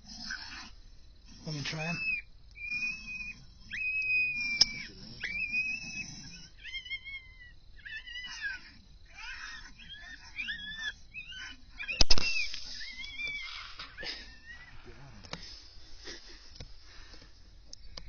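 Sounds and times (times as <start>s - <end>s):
coyote call whimpering cries: 1.4s - 15.4s
sharp click: 11.9s - 13.2s.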